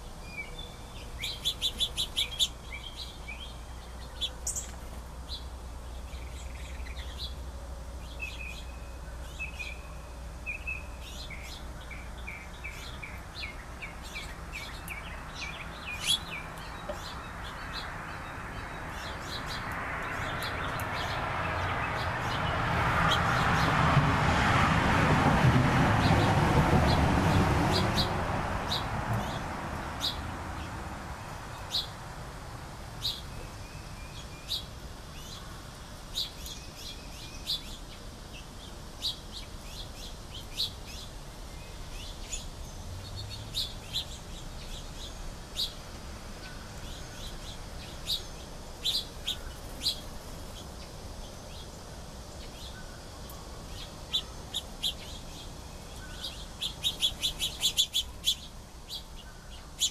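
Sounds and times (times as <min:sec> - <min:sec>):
small birds chirping: 0:00.0 - 0:23.8, 0:26.0 - 0:59.9
vehicle passing: 0:13.4 - 0:33.2.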